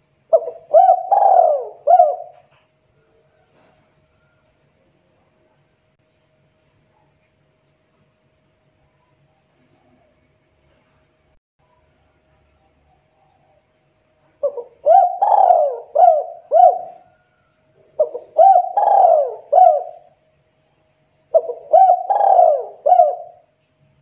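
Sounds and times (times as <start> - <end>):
dove cooing: 0.3 - 2.6, 14.3 - 20.2, 21.3 - 23.4.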